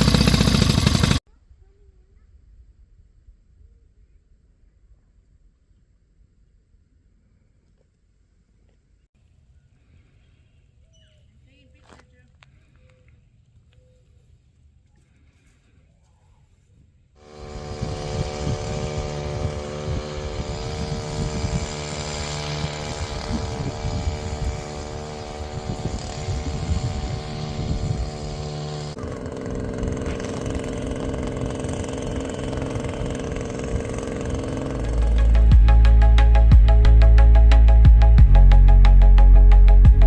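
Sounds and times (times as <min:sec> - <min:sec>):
engine running steadily: 0:00.0 - 0:01.2, 0:17.2 - 0:40.0.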